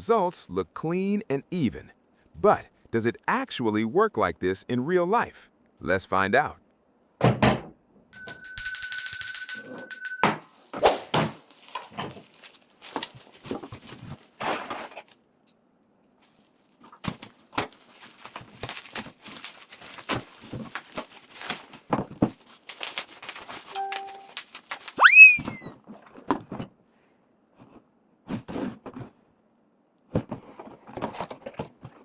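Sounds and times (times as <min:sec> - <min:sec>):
objects being handled: 0:09.8 - 0:15.4, 0:16.1 - 0:26.6.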